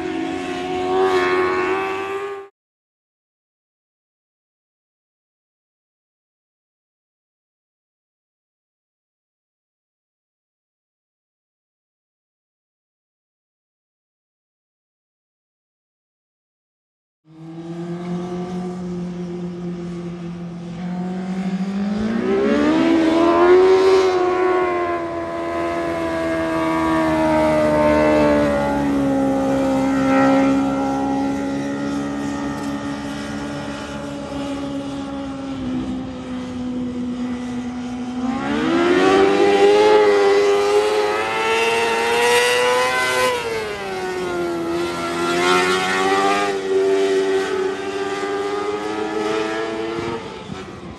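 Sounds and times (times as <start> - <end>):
car engine revving: 17.3 - 36.8, 37.4 - 50.8.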